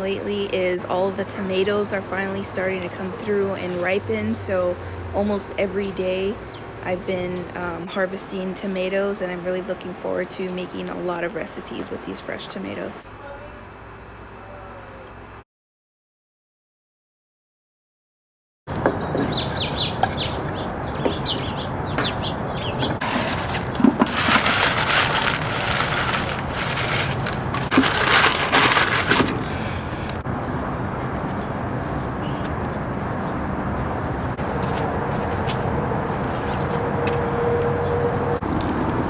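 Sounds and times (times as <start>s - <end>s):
outdoor background noise: 0.0s - 15.4s, 18.7s - 39.0s
bird calls: 18.8s - 23.2s, 30.4s - 35.0s
rustling handling noise: 23.0s - 30.0s.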